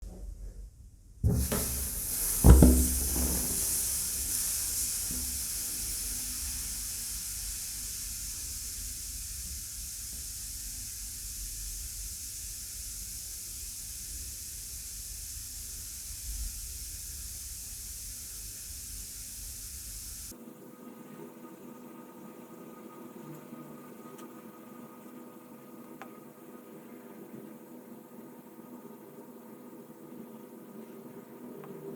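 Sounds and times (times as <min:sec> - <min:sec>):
hot metal sizzling on noodles: 0:01.2 - 0:20.3.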